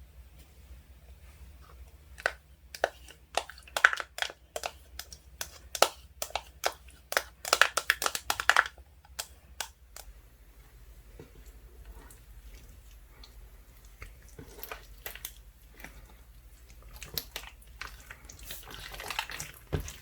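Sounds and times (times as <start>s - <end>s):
slime crackling and popping: 2.2s - 10.1s, 16.7s - 20.0s.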